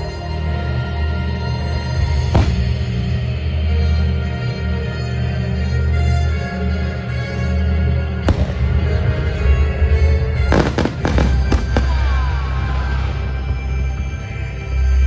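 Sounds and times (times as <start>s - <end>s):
fireworks cracking: 2.3s - 3.0s, 8.3s - 9.6s, 10.5s - 12.4s.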